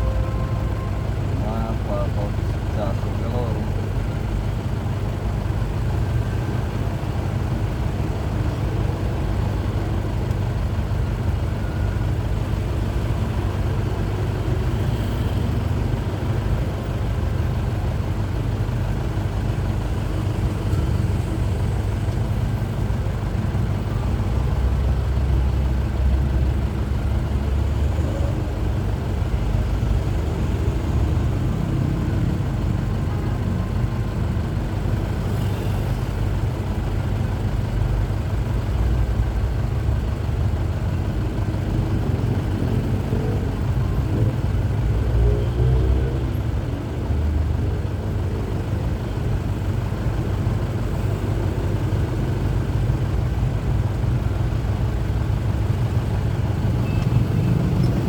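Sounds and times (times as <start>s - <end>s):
truck diesel engine drone: 0.0s - 58.0s.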